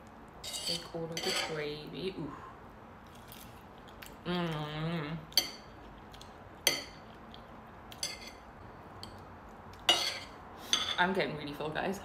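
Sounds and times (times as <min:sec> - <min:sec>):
cutlery clinking against a plate: 0:07.9 - 0:08.4, 0:09.9 - 0:11.0.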